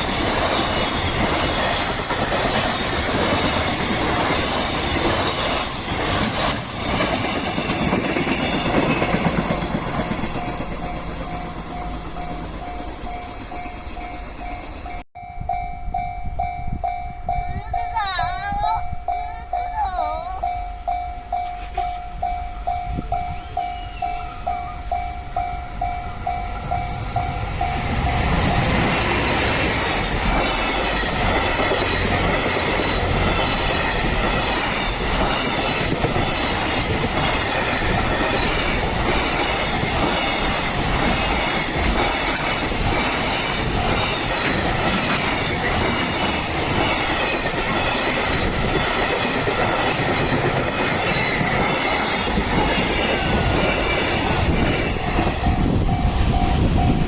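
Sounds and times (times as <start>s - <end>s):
freight train rumble: 0.0s - 57.0s
wheels clattering over rail joints: 27.7s - 56.4s.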